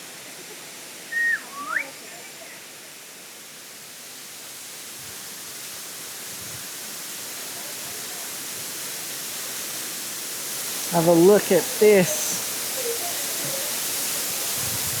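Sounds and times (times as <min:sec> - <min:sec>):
waterfall rushing: 0:00.0 - 0:15.0
whistled notes: 0:01.1 - 0:01.9.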